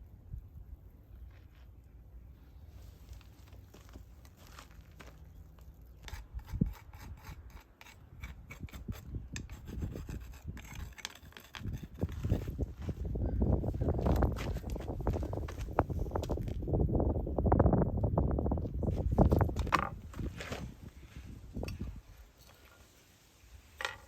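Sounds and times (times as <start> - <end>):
rubbing and scraping: 5.9 - 16.4.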